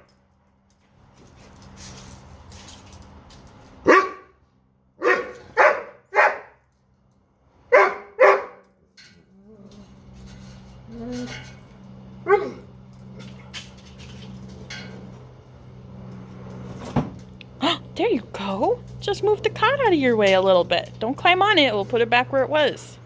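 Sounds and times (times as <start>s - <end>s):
dog barking: 3.9s - 4.3s, 5.0s - 6.6s, 7.7s - 8.6s, 12.2s - 12.6s.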